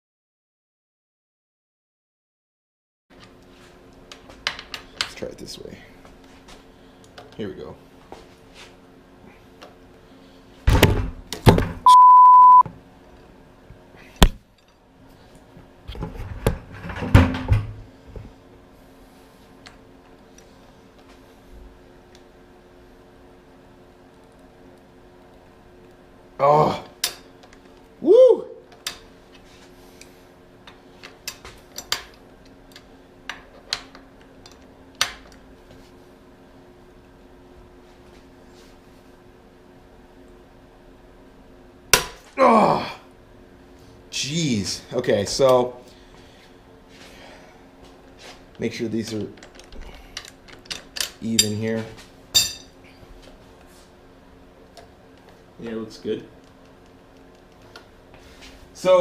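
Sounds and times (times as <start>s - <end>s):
faint hum: 3.2s - 59.0s
short steady beep: 11.8s - 12.6s.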